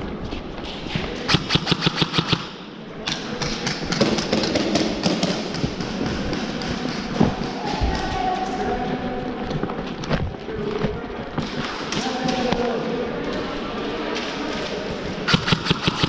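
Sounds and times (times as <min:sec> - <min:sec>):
airsoft gun shots: 0:01.3 - 0:02.6, 0:15.3 - 0:16.0.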